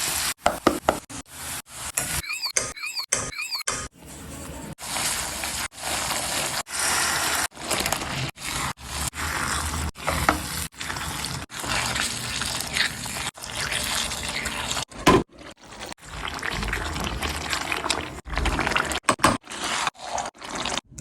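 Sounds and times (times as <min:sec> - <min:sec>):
gravy bubbling: 0:10.6 - 0:21.0.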